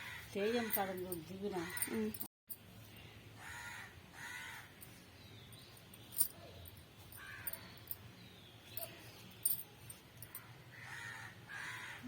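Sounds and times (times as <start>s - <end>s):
crow cawing: 3.4s - 4.7s, 10.7s - 12.0s.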